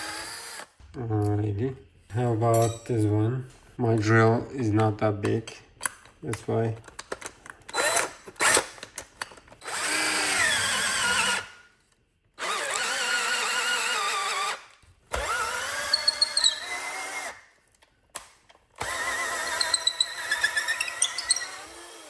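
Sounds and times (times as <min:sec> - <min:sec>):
power drill boring into wood: 0:00.0 - 0:00.7, 0:07.7 - 0:08.7, 0:09.6 - 0:11.6, 0:12.4 - 0:17.4, 0:18.8 - 0:22.0.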